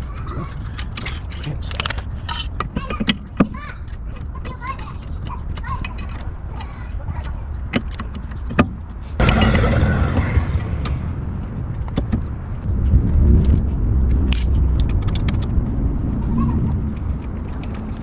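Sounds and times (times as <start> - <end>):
steady low rumble: 8.8 - 18.0.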